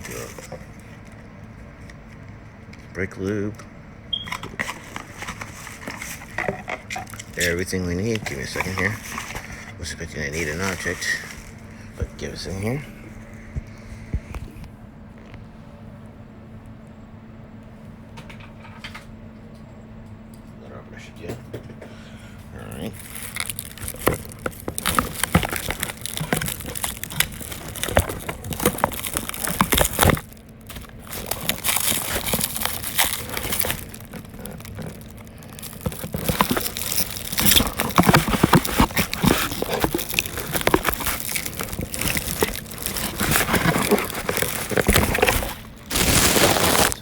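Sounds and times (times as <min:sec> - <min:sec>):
packaging crinkling and rustling: 0:00.0 - 0:01.2, 0:04.2 - 0:13.8, 0:22.5 - 0:47.0
sharp crackles: 0:22.6 - 0:47.0.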